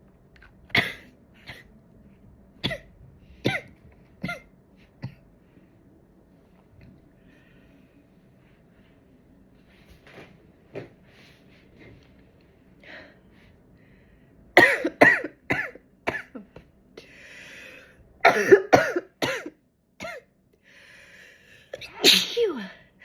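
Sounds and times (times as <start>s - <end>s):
woman sneezing: 21.8s - 22.8s.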